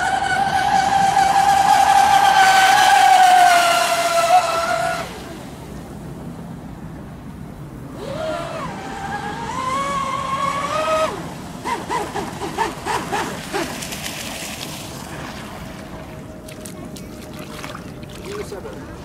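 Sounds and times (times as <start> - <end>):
short whine blips: 0.0 - 6.0, 7.7 - 14.0
model boat motor whining: 0.0 - 6.2, 7.8 - 13.8.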